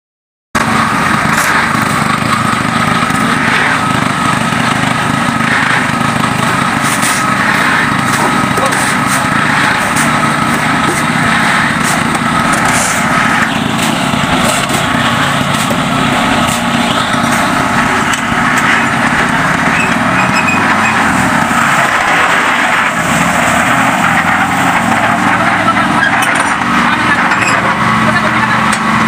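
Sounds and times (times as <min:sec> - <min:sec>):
small engine droning: 0:00.6 - 0:29.0.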